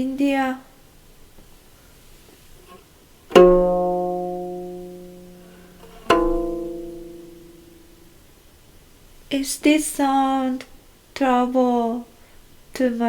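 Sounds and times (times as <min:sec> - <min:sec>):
plucked string instrument notes: 0:02.6 - 0:08.3.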